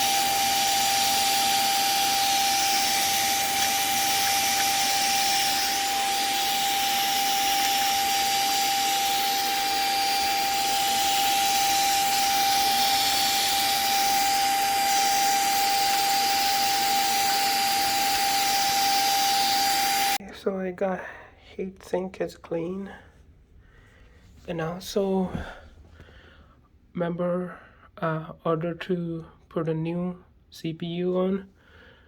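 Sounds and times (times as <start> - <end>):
small vacuum cleaner running: 0.0 - 20.2.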